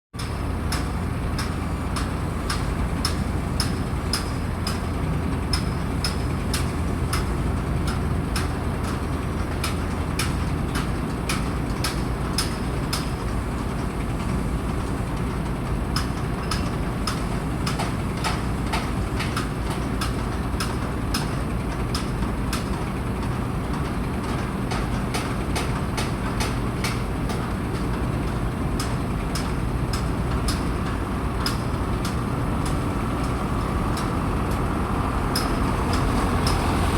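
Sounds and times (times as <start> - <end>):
heavy machinery engine rumble: 25.4 - 36.9
sharp ticks and clicks: 35.3 - 36.6.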